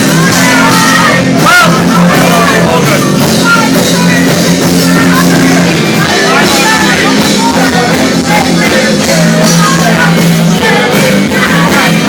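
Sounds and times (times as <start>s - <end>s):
bass line: 0.0s - 12.0s
loud rock music: 0.0s - 12.0s
person singing: 0.0s - 12.0s.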